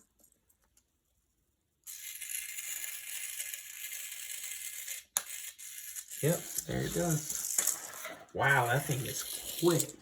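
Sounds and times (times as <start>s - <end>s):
toy motor and gears whirring: 1.8s - 10.0s.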